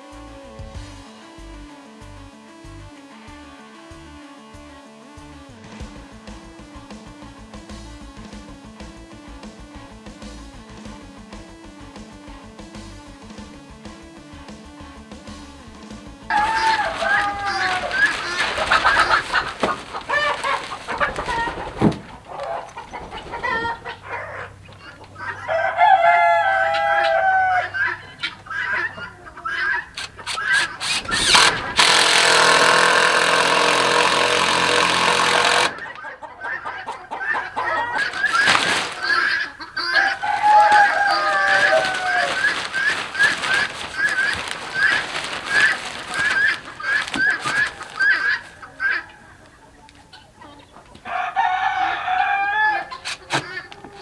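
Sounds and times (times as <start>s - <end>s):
chickens clucking: 16.3s - 54.0s
roosters crowing: 16.3s - 54.0s.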